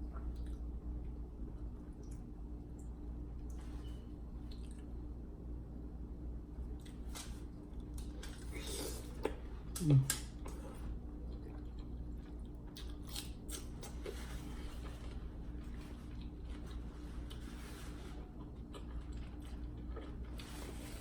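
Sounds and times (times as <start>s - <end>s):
chewing with mouth smacks: 0.0s - 1.2s, 4.4s - 5.0s, 6.6s - 21.0s.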